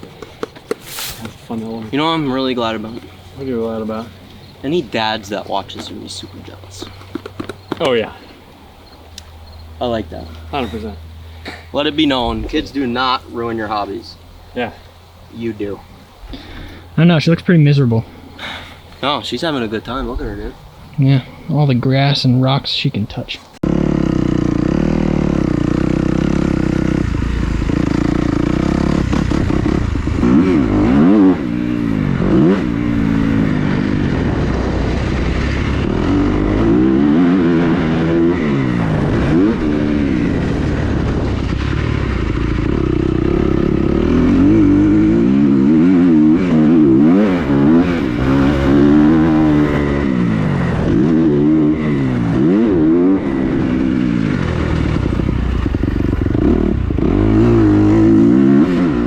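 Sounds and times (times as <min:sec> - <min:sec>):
dirt bike engine revving: 0:00.8 - 0:14.2, 0:23.6 - 0:59.0.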